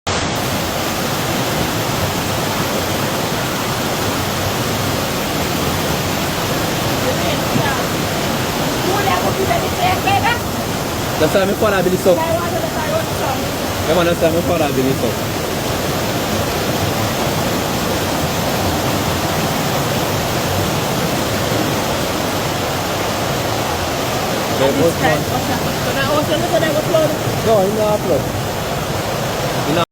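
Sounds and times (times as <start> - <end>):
floodwater rushing: 0.1 - 29.9
heavy rainfall: 0.1 - 29.9.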